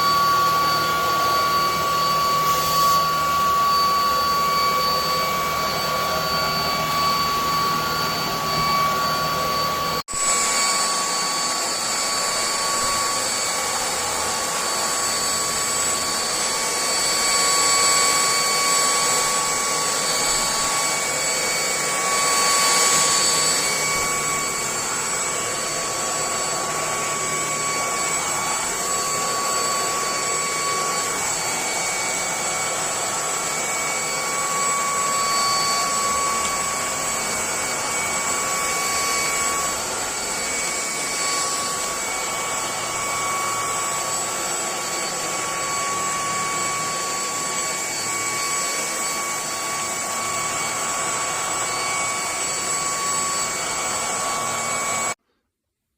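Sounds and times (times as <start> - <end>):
vacuum motor whine: 0.0 - 55.2.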